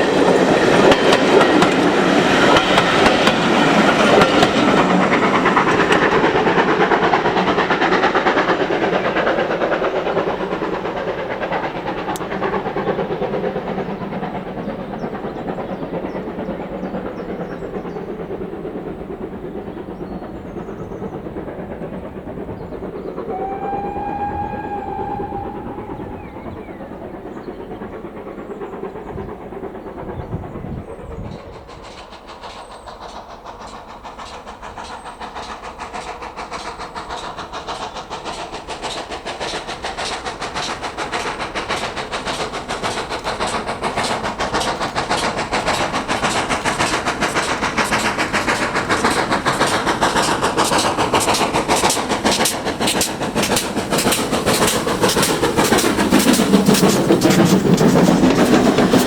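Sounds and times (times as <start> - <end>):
train wheels clattering on rails: 0.0 - 59.0
train whistle blast: 23.2 - 27.3.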